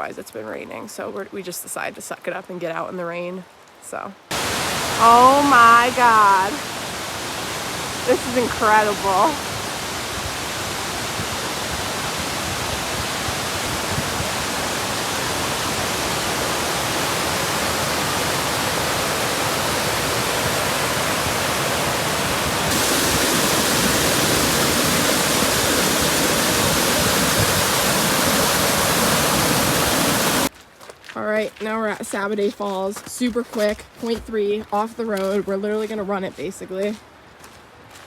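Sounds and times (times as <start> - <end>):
waterfall roaring: 4.3 - 30.5.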